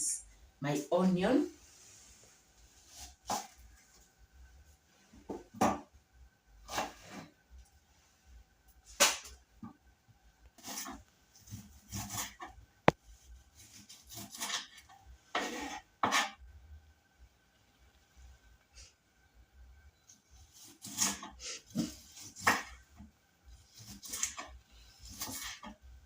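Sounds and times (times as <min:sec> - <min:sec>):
knife slicing onion on board: 0:10.6 - 0:12.6, 0:13.6 - 0:16.4, 0:20.5 - 0:23.1, 0:23.7 - 0:25.8.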